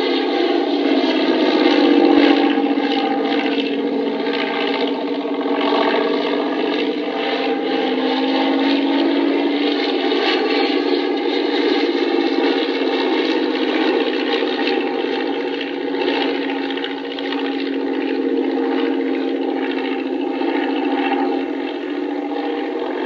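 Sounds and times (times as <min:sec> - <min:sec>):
large engine droning: 0:00.0 - 0:23.0.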